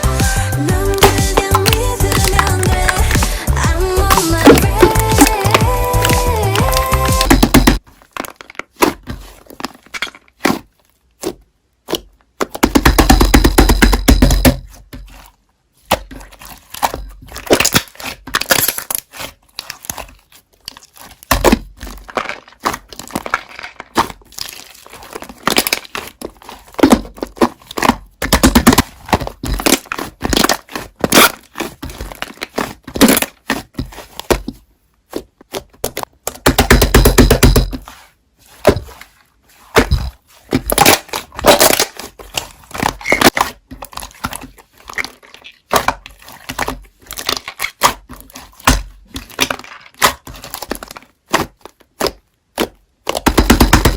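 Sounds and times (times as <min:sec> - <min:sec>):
slime squishing and popping: 0:00.8 - 0:37.5, 0:38.5 - 0:53.9.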